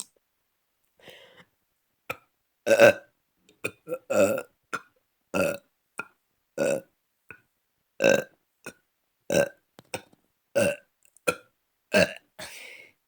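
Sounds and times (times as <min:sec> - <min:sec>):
person burping: 0:02.1 - 0:06.9, 0:08.0 - 0:09.6, 0:10.6 - 0:12.6.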